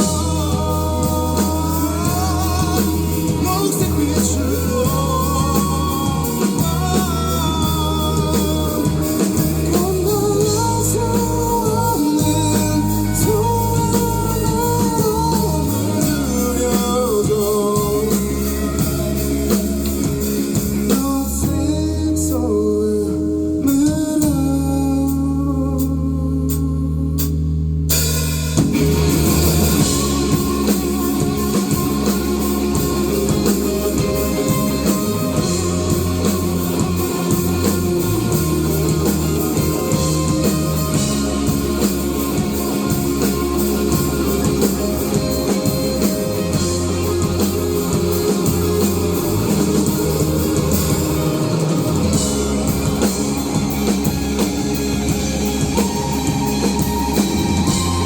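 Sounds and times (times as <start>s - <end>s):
rock band playing instrumental: 0.0s - 22.6s, 27.5s - 58.0s.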